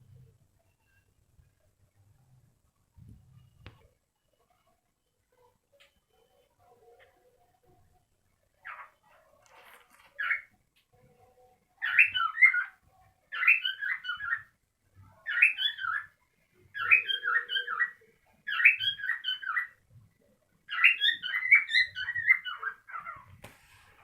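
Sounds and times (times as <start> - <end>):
cockatiel chirping: 11.8 - 14.5, 15.2 - 16.1, 16.8 - 19.8, 20.7 - 23.2.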